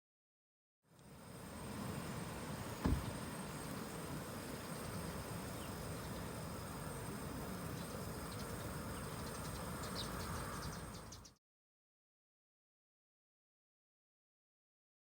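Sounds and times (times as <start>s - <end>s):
insects trilling: 1.0s - 11.4s.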